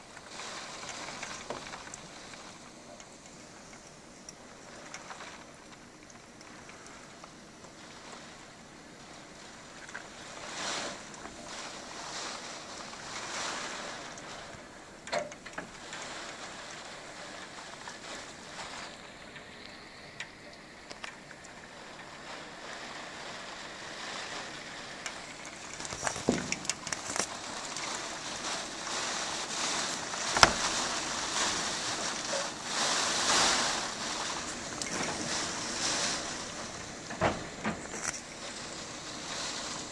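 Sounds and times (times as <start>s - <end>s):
knocks and clatters: 25.7s - 28.6s, 34.2s - 38.3s.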